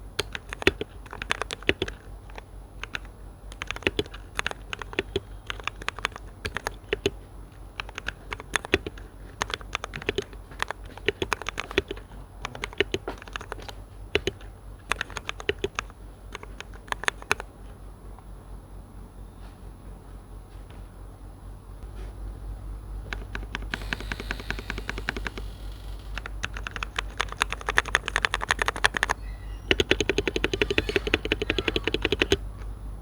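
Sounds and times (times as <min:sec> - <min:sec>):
rapid irregular clicks and taps: 0:00.2 - 0:17.5, 0:23.0 - 0:32.4
faint high-pitched whine: 0:13.7 - 0:33.0.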